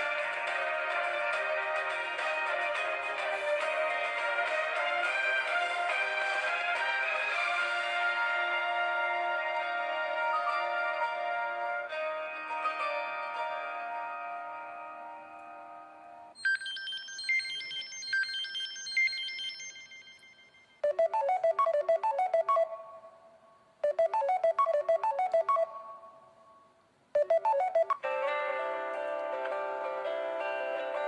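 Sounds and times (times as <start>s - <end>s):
phone ringtones: 16.4s - 23.2s, 23.8s - 26.4s, 27.2s - 28.0s.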